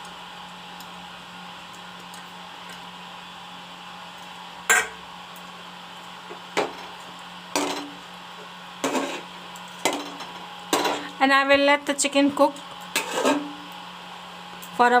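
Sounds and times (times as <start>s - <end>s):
metal utensil clanking on pan: 4.7s - 5.0s, 13.0s - 13.6s.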